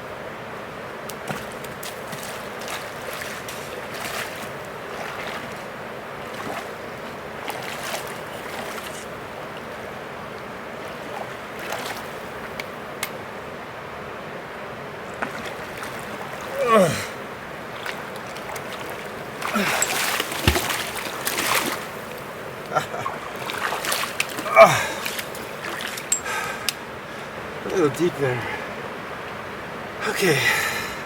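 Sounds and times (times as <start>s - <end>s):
river water flowing: 0.0s - 31.0s
person's vocal sound: 16.5s - 17.2s, 19.5s - 20.0s, 24.4s - 25.0s
footsteps on rock: 19.4s - 21.8s.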